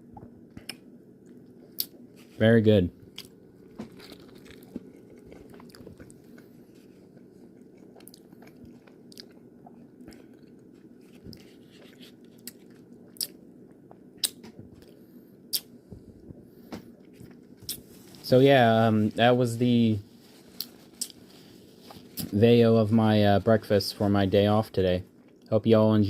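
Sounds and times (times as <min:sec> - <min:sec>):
steady low hum: 0:00.0 - 0:26.0
person chewing food: 0:03.1 - 0:18.2, 0:20.5 - 0:22.2.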